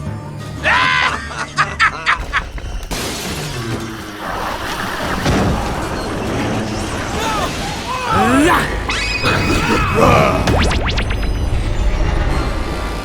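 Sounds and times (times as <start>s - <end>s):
crashing and breaking noise: 2.1s - 8.4s.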